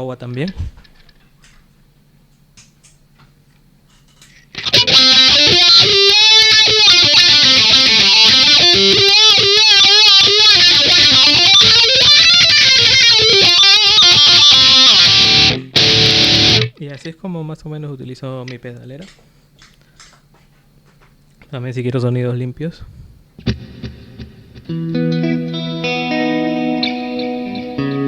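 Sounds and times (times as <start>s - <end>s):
faint amplifier hum: 0.0s - 28.0s
distorted electric guitar with wah: 4.5s - 16.8s, 23.4s - 28.0s.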